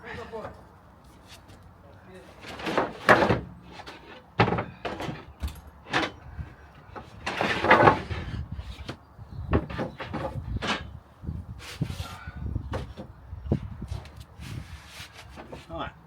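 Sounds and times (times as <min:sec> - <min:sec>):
camper bed knocks and bumps: 0:04.4 - 0:06.2, 0:09.4 - 0:11.0.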